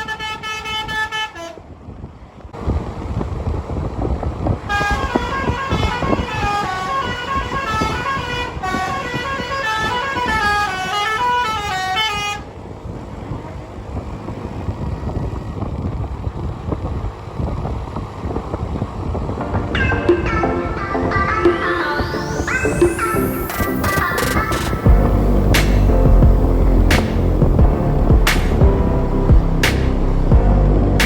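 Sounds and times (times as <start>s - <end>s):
bus engine and road rumble: 0.0s - 21.4s, 22.2s - 31.0s
musical air horn tune: 19.4s - 31.0s.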